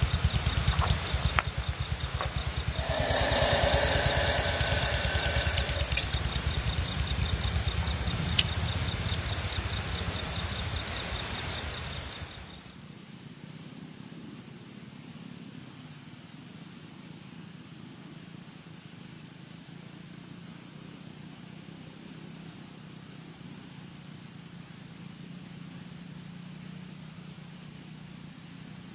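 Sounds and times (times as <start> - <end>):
insect chirring trill: 1.0 - 7.4
train rumbling past: 2.7 - 7.3.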